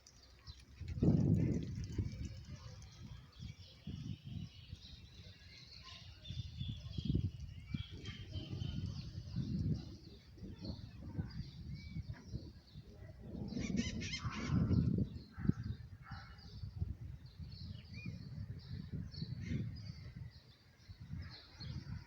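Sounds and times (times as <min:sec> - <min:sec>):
distant thunder rumble: 0:13.1 - 0:15.6.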